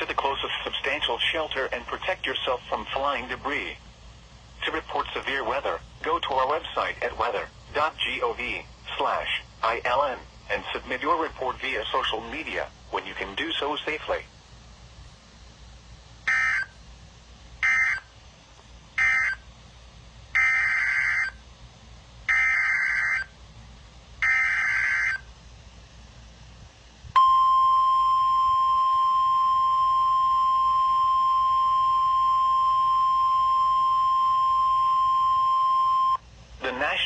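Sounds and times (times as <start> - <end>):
steady alarm tone: 16.2 - 16.8, 17.6 - 18.1, 19.0 - 19.4, 20.4 - 21.4, 22.3 - 23.3, 24.2 - 25.3, 27.2 - 36.2.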